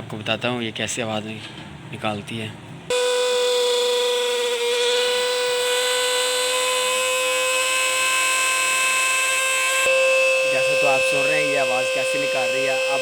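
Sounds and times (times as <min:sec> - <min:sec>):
mixer grinder motor whining: 0:02.9 - 0:13.0.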